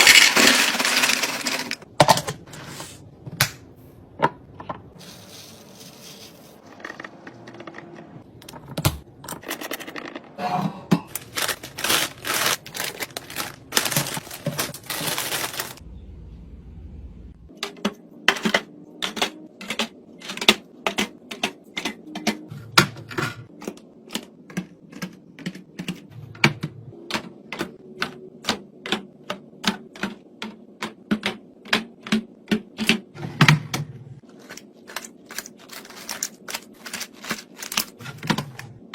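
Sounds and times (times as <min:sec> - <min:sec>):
packaging rustling and crinkling: 0:11.1 - 0:15.8, 0:34.2 - 0:38.4.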